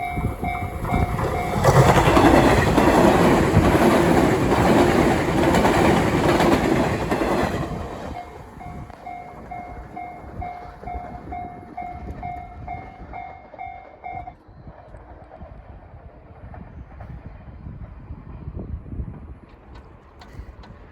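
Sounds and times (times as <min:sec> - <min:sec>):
crossing warning bell ringing: 0:00.0 - 0:14.4
train clattering over rails: 0:00.0 - 0:20.9.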